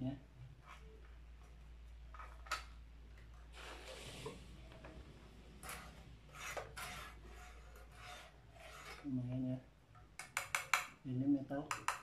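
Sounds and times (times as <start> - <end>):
tool handling knocks and clicks: 11.7 - 12.0.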